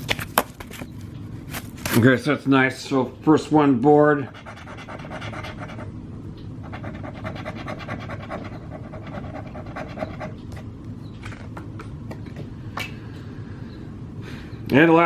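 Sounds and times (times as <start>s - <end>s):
lottery ticket being scratched: 4.2s - 5.9s, 6.6s - 10.5s.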